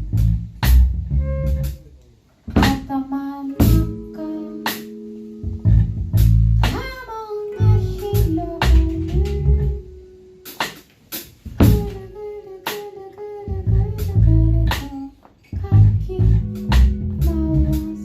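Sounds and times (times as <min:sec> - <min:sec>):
bass line: 0:00.0 - 0:02.9, 0:03.6 - 0:10.5, 0:11.5 - 0:12.1, 0:13.5 - 0:18.0
held guitar notes: 0:00.0 - 0:12.3, 0:15.5 - 0:18.0
drum hits: 0:02.5 - 0:02.9, 0:03.6 - 0:04.0, 0:05.7 - 0:07.0, 0:10.5 - 0:12.0
live band playing: 0:03.6 - 0:12.1, 0:16.2 - 0:18.0.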